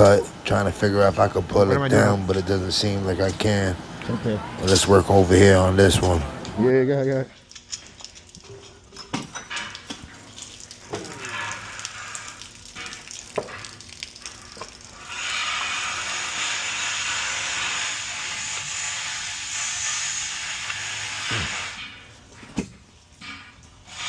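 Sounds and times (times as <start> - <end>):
steady hiss: 0.0 - 6.7, 15.0 - 22.1.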